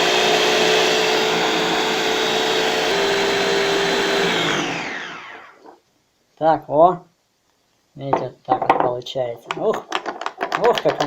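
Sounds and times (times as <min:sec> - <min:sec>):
kitchen chopper motor whining: 0:00.0 - 0:05.6.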